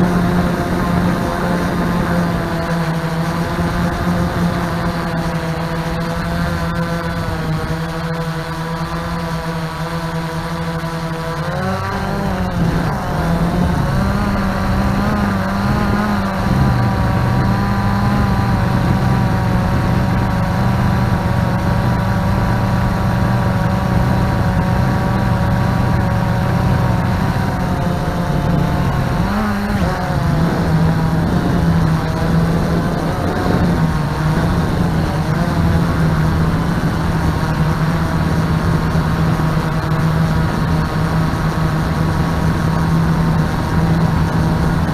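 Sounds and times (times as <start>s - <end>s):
drone propellers humming: 0.0s - 44.9s.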